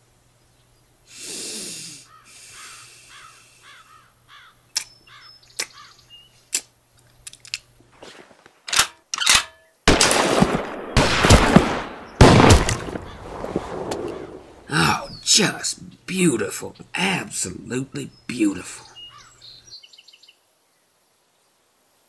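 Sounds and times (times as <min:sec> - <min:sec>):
chirping calls: 0:02.0 - 0:06.5, 0:14.0 - 0:20.4
gunshots: 0:09.3 - 0:14.6.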